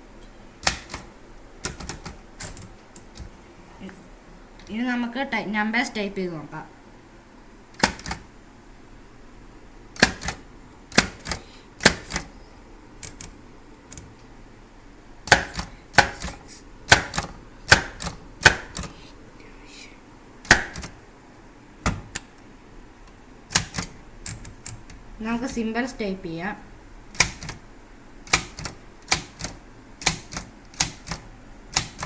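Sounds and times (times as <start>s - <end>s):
typewriter typebar clacks: 7.8s - 8.2s, 10.0s - 12.3s, 23.5s - 24.8s, 27.2s - 27.6s, 28.3s - 32.0s.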